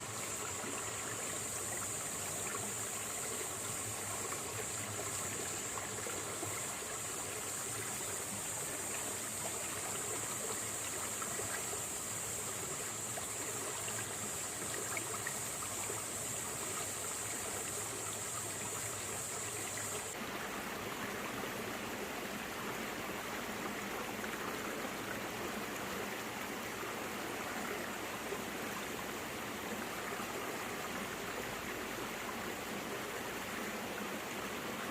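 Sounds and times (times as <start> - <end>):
steady high hiss: 0.0 - 20.2
stream running over rocks: 0.0 - 34.9.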